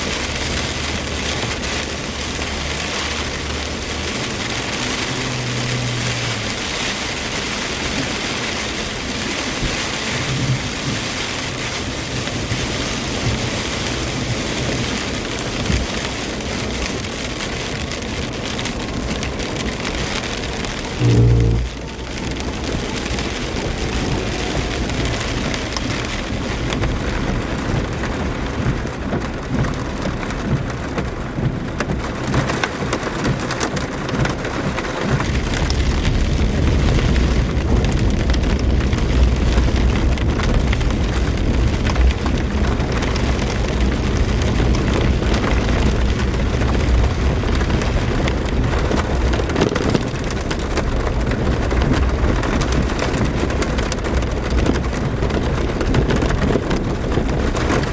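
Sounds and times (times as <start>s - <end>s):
heavy rain pouring: 0.0s - 57.9s
thunder rumble: 19.6s - 28.8s.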